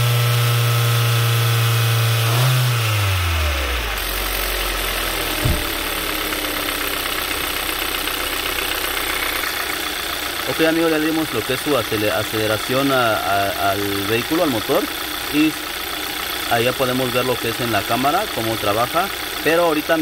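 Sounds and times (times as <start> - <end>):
car engine revving and idling: 0.0 - 20.0
brief engine knock: 5.2 - 7.5.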